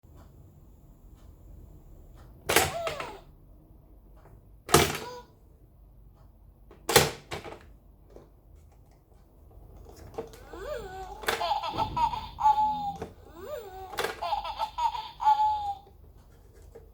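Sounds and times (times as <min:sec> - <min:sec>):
baby toy knock: 0:11.2 - 0:13.1.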